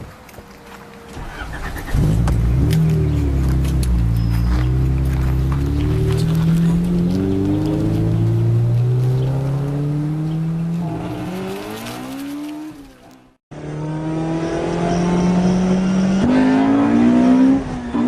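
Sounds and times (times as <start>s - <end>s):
car engine accelerating: 1.1s - 18.0s.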